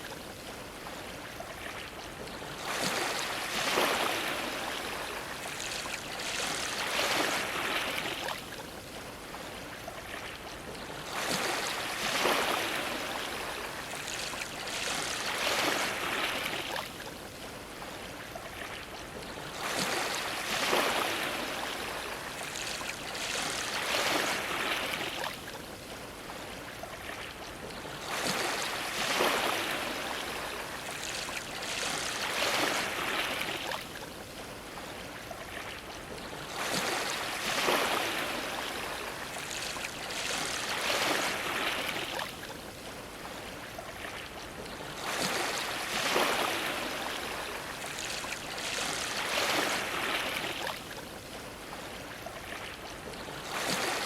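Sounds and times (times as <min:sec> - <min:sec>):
ocean waves splashing against dock: 0:00.0 - 0:54.0.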